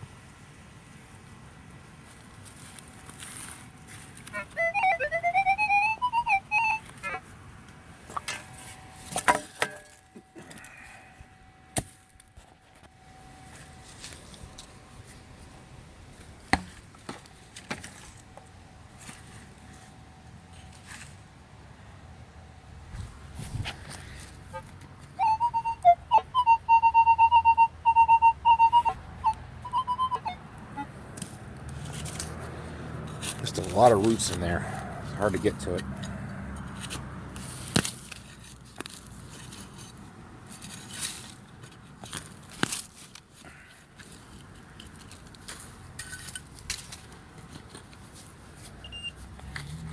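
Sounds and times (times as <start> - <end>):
dirt crackling and scraping: 0.9 - 21.3, 30.8 - 49.9.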